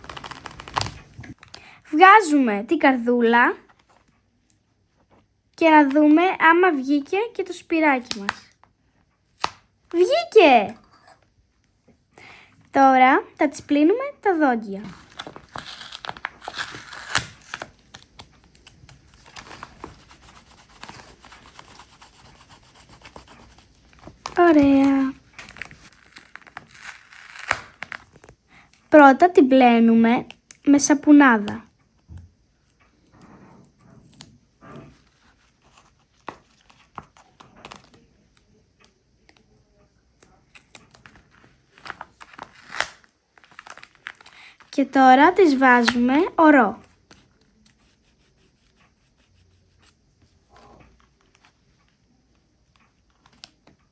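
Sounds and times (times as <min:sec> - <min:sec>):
paper rustling and crinkling: 0:00.0 - 0:01.6, 0:14.8 - 0:28.4, 0:34.9 - 0:38.2, 0:40.2 - 0:44.8
brush scratching on paper: 0:19.4 - 0:23.9, 0:47.1 - 0:50.0.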